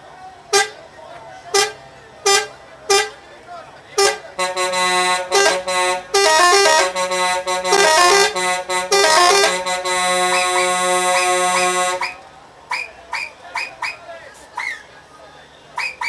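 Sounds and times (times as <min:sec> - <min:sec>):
musical air horn tune: 0:04.0 - 0:12.2.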